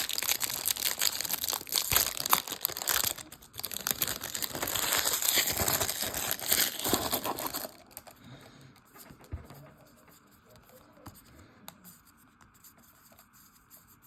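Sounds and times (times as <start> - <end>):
plastic wrapper tearing and crinkling: 0.0 - 8.1.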